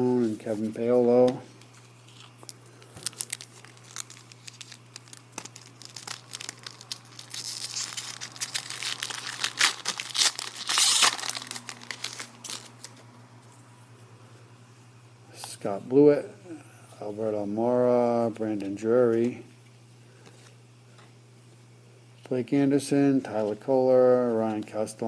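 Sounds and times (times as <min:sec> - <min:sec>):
wrapper tearing and crinkling: 0:02.0 - 0:13.0.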